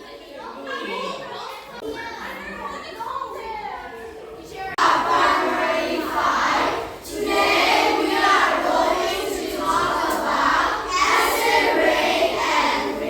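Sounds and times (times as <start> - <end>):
children chanting in unison: 4.8 - 13.0.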